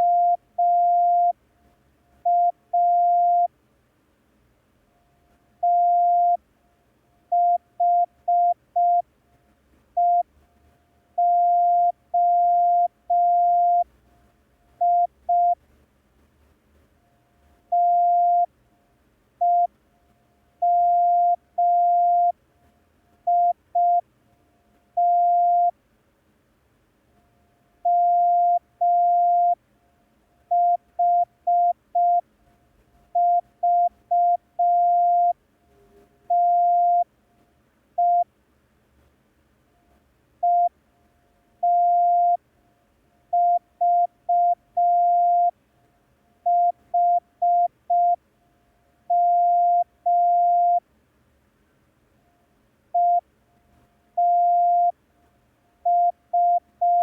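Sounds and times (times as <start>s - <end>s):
morse code beeps: 2.3s - 3.5s, 5.6s - 6.4s, 7.4s - 9.0s, 10.0s - 10.3s, 11.2s - 13.8s, 14.8s - 15.6s, 17.7s - 18.5s, 19.4s - 19.7s, 20.6s - 22.4s, 23.3s - 24.0s, 25.0s - 25.7s, 27.9s - 29.6s, 30.5s - 32.2s, 33.2s - 35.4s, 36.3s - 37.0s, 38.0s - 38.3s, 40.4s - 40.7s, 41.6s - 42.4s, 43.4s - 45.5s, 46.5s - 48.2s, 49.1s - 50.8s, 53.0s - 53.2s, 54.2s - 54.9s, 55.9s - 57.0s.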